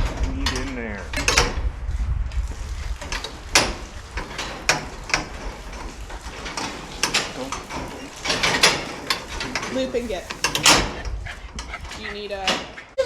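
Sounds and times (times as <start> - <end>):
low rumble: 0.0 - 4.3
sharp knocks and clatters: 0.0 - 13.0.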